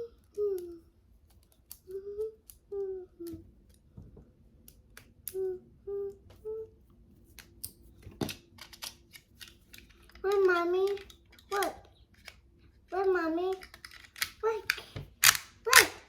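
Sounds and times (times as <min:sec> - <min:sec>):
high voice humming: 0:01.9 - 0:03.5, 0:05.3 - 0:06.8.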